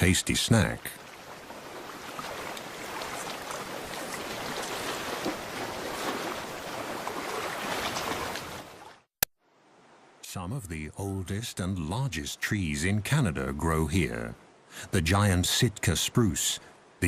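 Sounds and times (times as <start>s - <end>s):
small waves on rocky shore: 0.0s - 9.1s.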